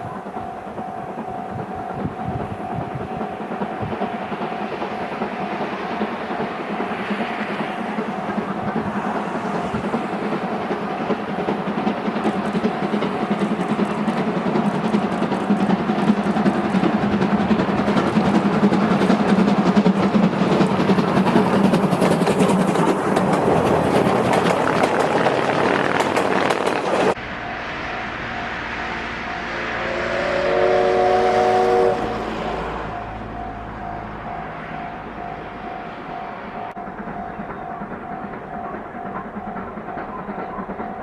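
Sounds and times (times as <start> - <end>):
steam train running and clattering: 0.0 - 41.0
train whistle: 27.3 - 34.4.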